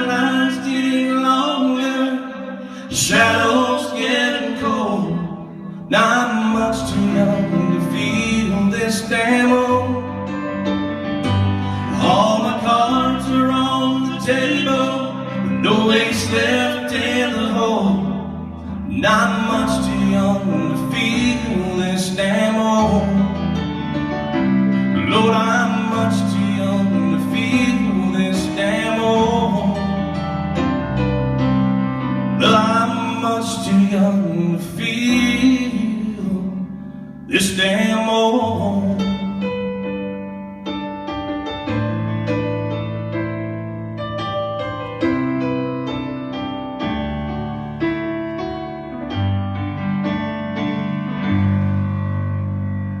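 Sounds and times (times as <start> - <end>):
country band playing live: 0.0 - 36.7.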